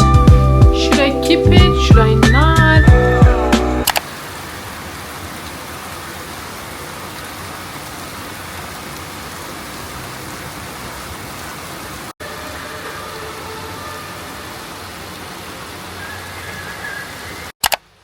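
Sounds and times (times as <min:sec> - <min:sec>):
steady rain falling: 0:03.4 - 0:18.0.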